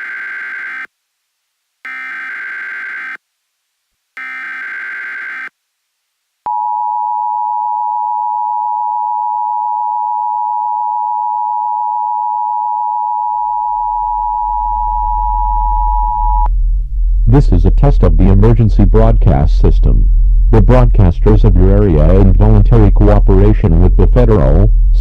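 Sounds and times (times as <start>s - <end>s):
low hum: 6.5s - 25.0s.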